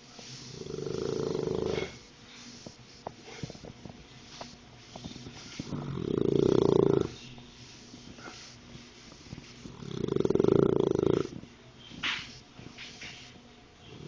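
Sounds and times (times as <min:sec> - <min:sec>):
dog snoring: 0:00.4 - 0:02.0, 0:03.3 - 0:07.2, 0:09.6 - 0:11.4.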